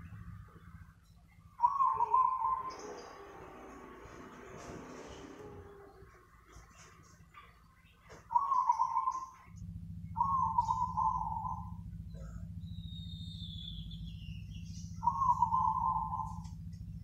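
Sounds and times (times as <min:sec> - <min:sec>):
low hum: 0:00.0 - 0:17.0
dove cooing: 0:01.6 - 0:07.0, 0:08.2 - 0:09.5, 0:10.2 - 0:12.5, 0:15.0 - 0:16.6.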